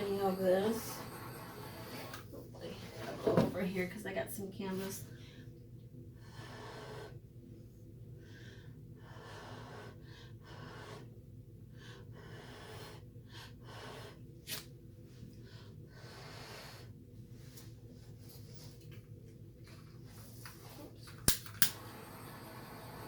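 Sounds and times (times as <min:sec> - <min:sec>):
butane torch hissing: 0:00.0 - 0:02.3, 0:21.4 - 0:23.0
steady low hum: 0:00.0 - 0:23.0
sharp click: 0:21.3 - 0:21.8.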